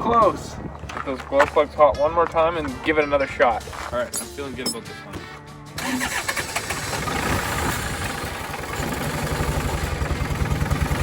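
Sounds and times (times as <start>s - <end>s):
tractor diesel engine starting: 5.8s - 11.0s.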